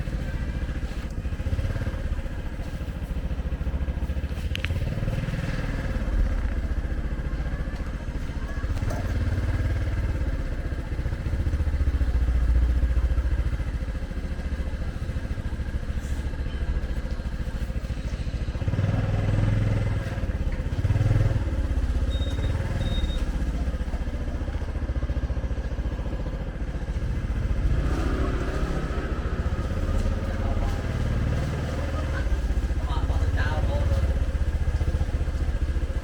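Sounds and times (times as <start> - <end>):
motorcycle engine running: 0.0 - 36.0
street traffic noise: 0.0 - 36.0
short faint high beeps: 22.1 - 23.3.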